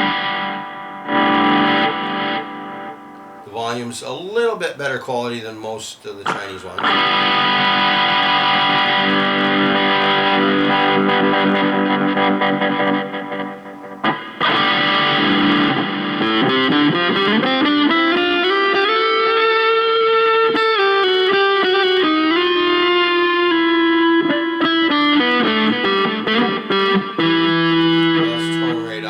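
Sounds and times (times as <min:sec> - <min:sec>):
electric guitar through amplifier: 0:00.0 - 0:04.4, 0:06.0 - 0:29.0.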